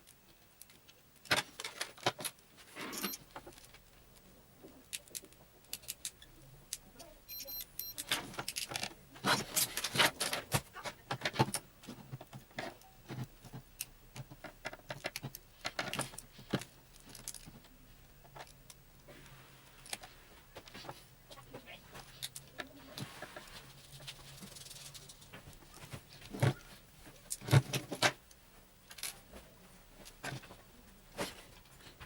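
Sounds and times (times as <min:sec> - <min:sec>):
clicks and clatter of small parts: 0:00.0 - 0:02.4, 0:04.8 - 0:06.8, 0:07.8 - 0:18.8, 0:22.0 - 0:29.3.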